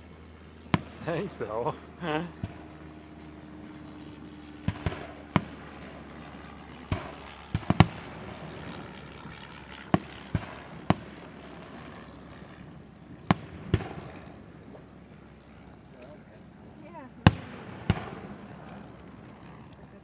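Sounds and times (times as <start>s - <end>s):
fireworks bursting with bangs: 17.3s - 18.3s.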